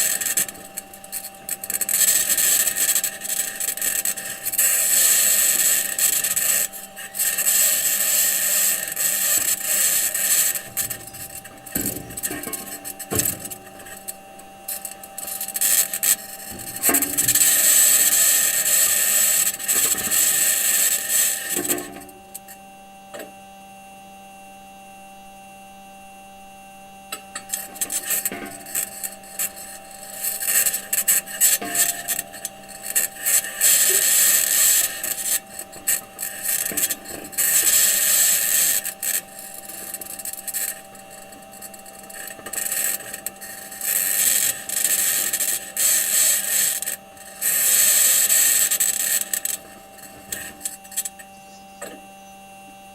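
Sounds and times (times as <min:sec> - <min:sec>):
metal wheels grinding over rocks: 0:00.0 - 0:22.5, 0:27.2 - 0:51.6
steady hum: 0:00.0 - 0:52.9
wheels knocking over rocks: 0:08.7 - 0:22.2, 0:27.4 - 0:51.4.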